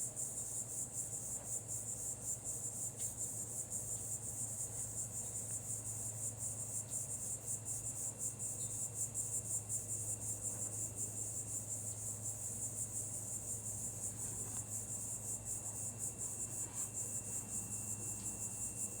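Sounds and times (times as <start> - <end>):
crickets trilling: 0.0 - 19.0.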